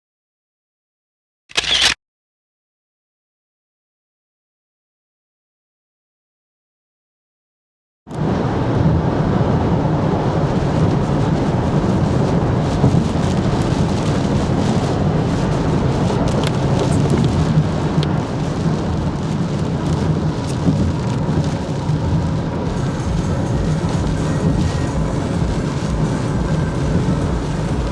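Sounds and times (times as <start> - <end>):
heavy rain pouring: 8.1 - 27.9
low rumble: 8.1 - 27.9
raindrops ticking close by: 10.4 - 27.9.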